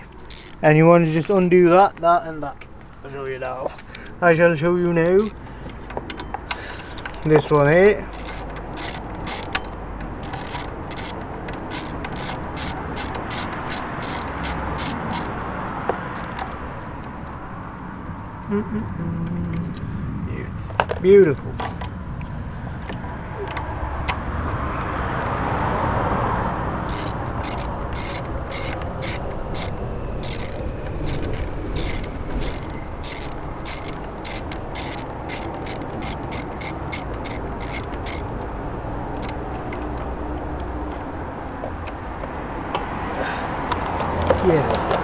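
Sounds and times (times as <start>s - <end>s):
socket ratchet clicking: 0.0s - 0.8s, 4.8s - 17.2s, 26.8s - 38.5s, 43.7s - 44.4s.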